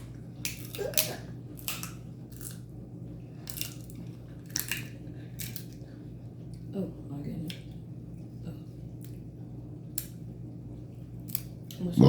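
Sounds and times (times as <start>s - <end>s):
chewing and crunching food: 0.0s - 6.7s.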